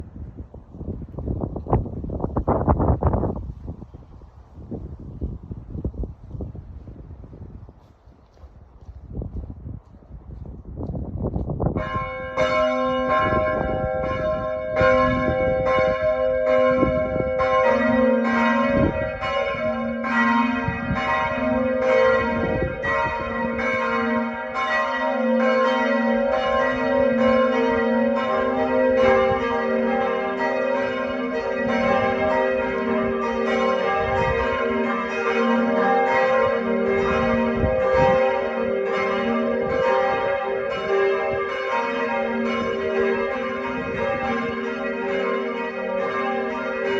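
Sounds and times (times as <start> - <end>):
church bells ringing: 11.7 - 46.9.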